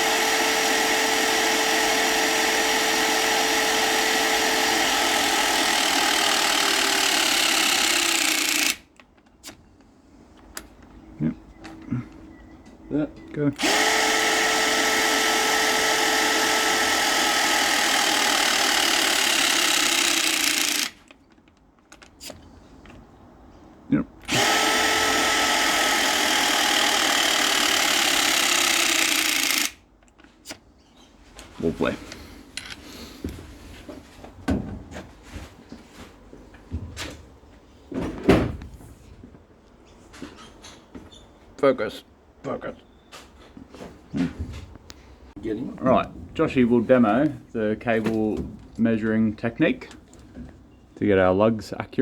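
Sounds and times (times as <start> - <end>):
power tool motor whine: 0.0 - 8.8, 13.6 - 21.0, 24.3 - 29.8.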